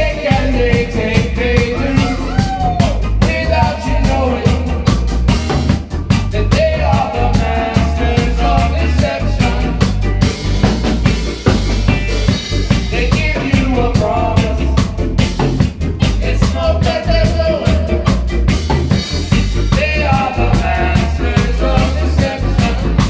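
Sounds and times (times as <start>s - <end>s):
busy drum kit: 0.0s - 23.0s
heavy bass line: 0.0s - 23.0s
reggae band playing: 0.0s - 23.0s.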